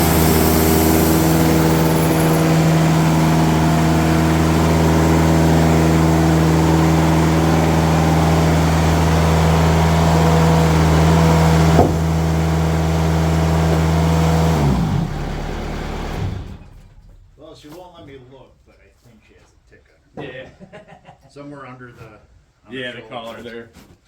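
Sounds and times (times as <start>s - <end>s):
band blade cutting wood hiss: 0.0s - 3.0s
sawmill engine running: 0.0s - 17.4s
sharp knock: 11.8s - 12.1s.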